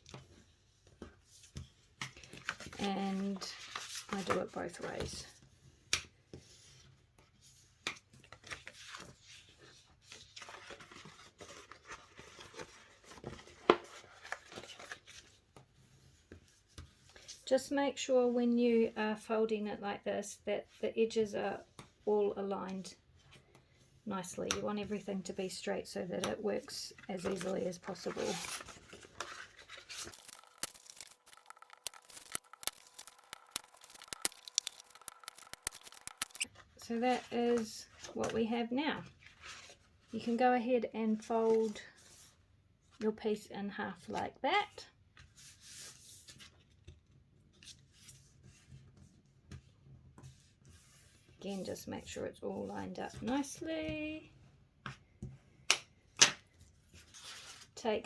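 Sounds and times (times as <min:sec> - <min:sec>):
cardstock folding clicks and crinkles: 0:00.0 - 0:17.4, 0:27.0 - 0:38.4
paper rubbing and crinkling: 0:27.0 - 0:36.5.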